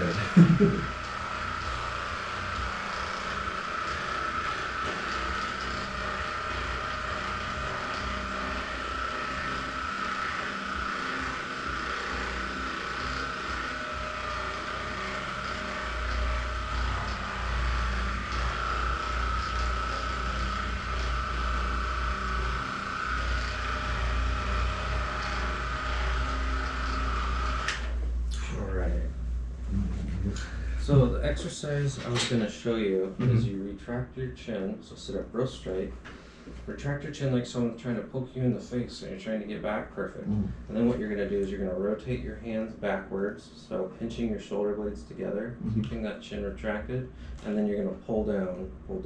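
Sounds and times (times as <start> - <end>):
small motor whining: 0.0 - 28.1
low fluttering rumble: 28.0 - 32.0.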